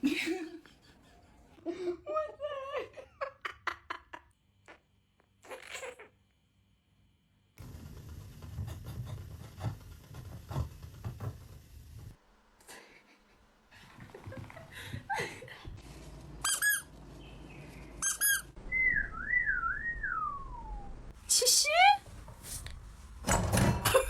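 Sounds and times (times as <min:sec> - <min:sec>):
short high-pitched squeaks: 0:16.4 - 0:17.0, 0:18.0 - 0:18.6
warbling whistle sliding downward: 0:18.7 - 0:21.1
rustling: 0:22.0 - 0:24.0.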